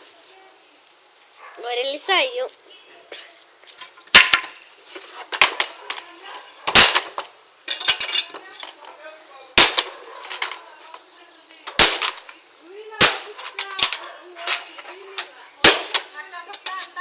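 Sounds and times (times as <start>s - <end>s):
faint fire crackling: 0.0s - 17.0s
wood popping in bonfire: 3.4s - 11.1s, 11.7s - 17.0s.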